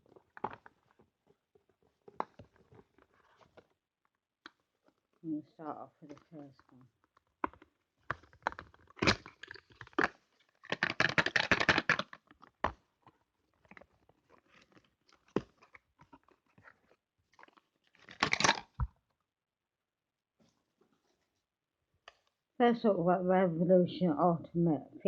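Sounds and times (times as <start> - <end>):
cardboard rustling and crunching: 0.0 - 3.8, 6.1 - 19.0.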